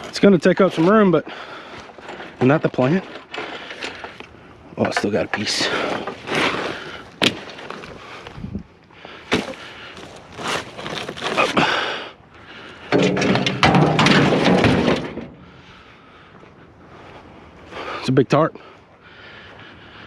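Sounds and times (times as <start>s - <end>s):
rough scraping: 0.0s - 8.6s, 9.2s - 11.9s
scrap tossed into truck bed: 9.3s - 9.6s, 12.9s - 15.5s.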